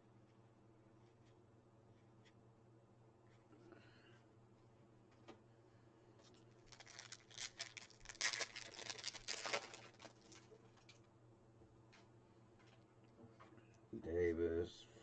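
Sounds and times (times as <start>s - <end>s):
card packaging rustling and clicking: 6.3s - 11.0s.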